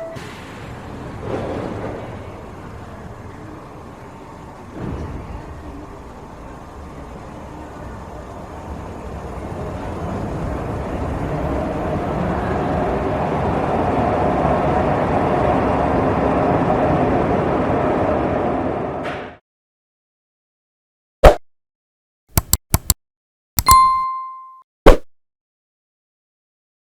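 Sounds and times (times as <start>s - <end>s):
metro train running: 0.0s - 19.2s.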